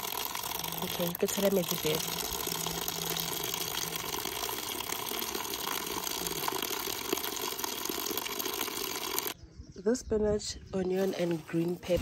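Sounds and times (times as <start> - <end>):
water running from a tap: 0.0 - 9.4.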